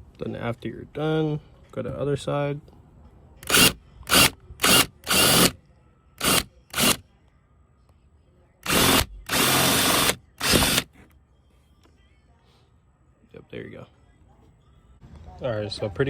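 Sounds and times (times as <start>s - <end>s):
power drill bursts: 3.4s - 5.6s, 6.2s - 7.0s, 8.6s - 10.9s.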